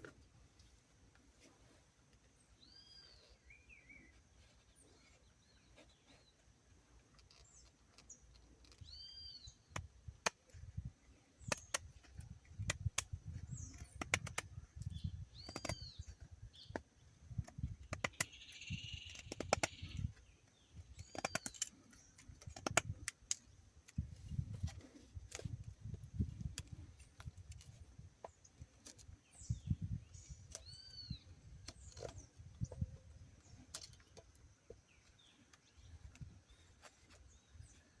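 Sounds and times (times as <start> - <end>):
sharp clicks: 11.4 - 16.0, 17.4 - 20.2, 20.8 - 24.0
bird call: 18.1 - 20.1.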